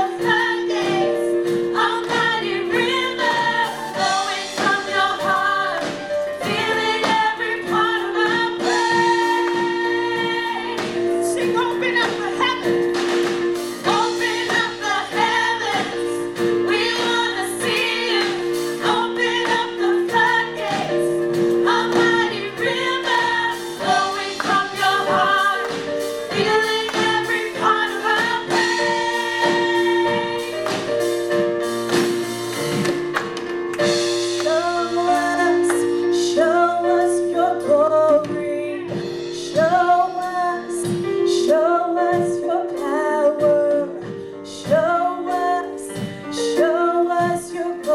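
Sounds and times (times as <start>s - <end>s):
woman singing: 34.4s - 47.9s.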